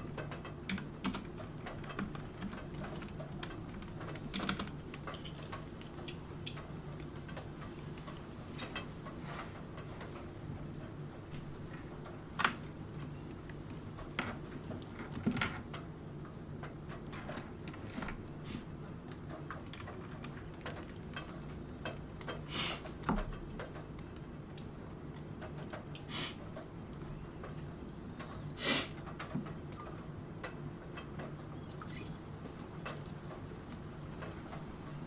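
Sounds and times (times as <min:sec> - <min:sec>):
keyboard keys clicking: 0:00.0 - 0:07.7
low background hum: 0:00.0 - 0:35.0.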